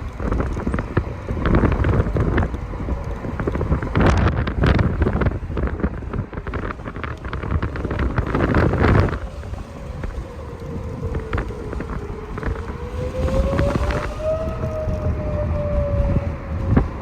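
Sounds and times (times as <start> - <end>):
faint warning siren: 0.0 - 17.0
wind buffeting microphone: 0.0 - 17.0.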